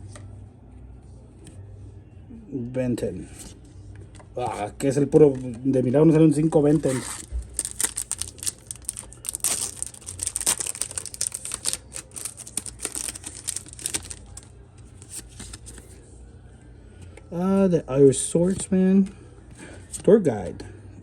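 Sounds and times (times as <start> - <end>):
foil wrapper crinkling and tearing: 6.6 - 15.6.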